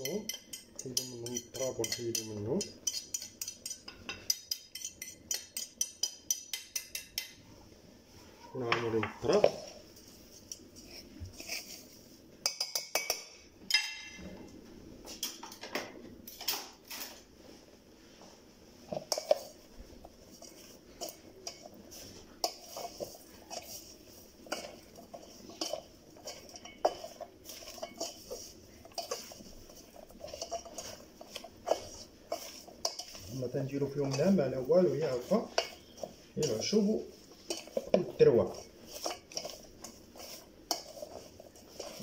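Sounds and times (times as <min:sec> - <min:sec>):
utensils and dishes clinking: 0:00.0 - 0:07.4, 0:10.5 - 0:14.4, 0:20.3 - 0:42.0.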